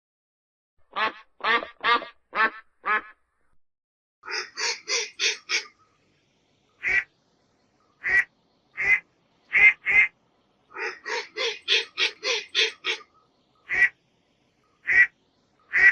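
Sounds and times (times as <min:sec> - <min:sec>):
duck quacking: 0:00.9 - 0:03.2, 0:04.3 - 0:05.8, 0:06.8 - 0:07.1, 0:08.0 - 0:10.1, 0:10.7 - 0:14.0, 0:14.8 - 0:15.9.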